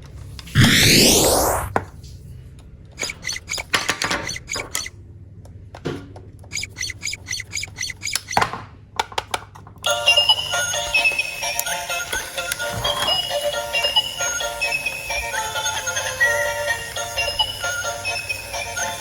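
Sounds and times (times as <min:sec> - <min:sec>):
high electronic chirps: 0:00.6 - 0:01.7, 0:03.0 - 0:04.9.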